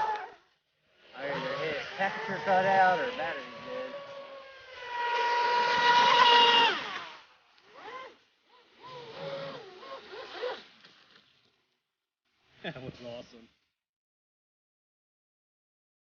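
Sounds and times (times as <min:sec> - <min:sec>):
rc boat motor whining: 0:00.0 - 0:10.8.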